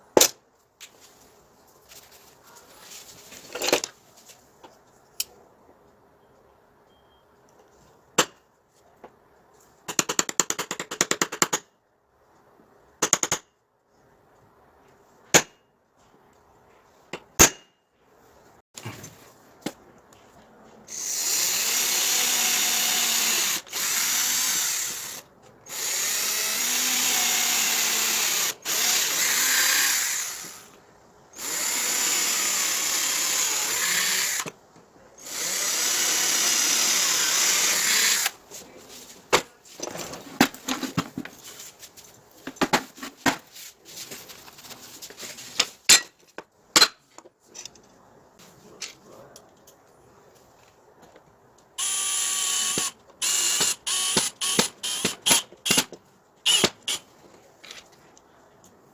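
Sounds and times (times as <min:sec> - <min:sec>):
power tool whirring: 0:20.9 - 0:30.7, 0:31.4 - 0:34.5, 0:35.2 - 0:38.4, 0:51.8 - 0:55.8, 0:56.5 - 0:57.0.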